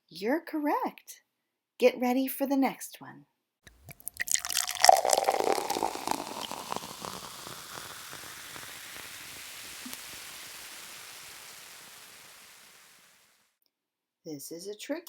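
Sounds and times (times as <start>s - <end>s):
water pouring into a glass: 3.7s - 13.3s.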